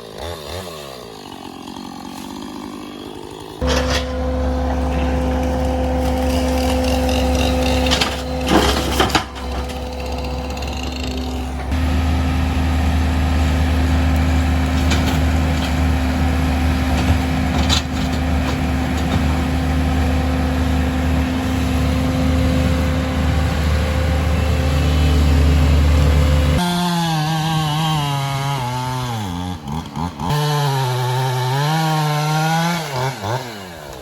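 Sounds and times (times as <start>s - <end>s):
engine running at low speed: 3.6s - 26.7s.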